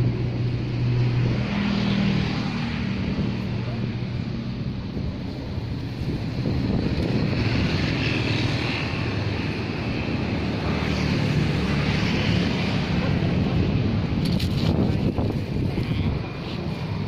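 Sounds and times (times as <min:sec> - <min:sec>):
low engine drone: 0:00.0 - 0:17.0.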